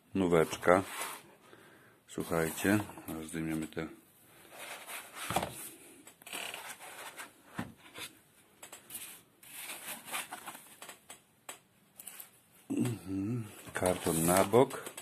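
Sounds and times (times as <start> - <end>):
cardboard rustling and scraping: 2.2 - 3.7, 4.5 - 8.2, 8.9 - 10.8, 13.7 - 14.8.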